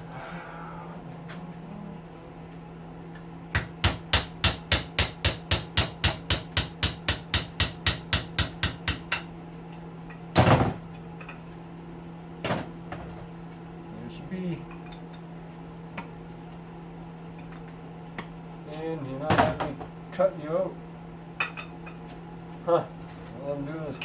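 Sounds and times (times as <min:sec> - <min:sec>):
hammer tapping a metal punch: 0:03.5 - 0:09.3.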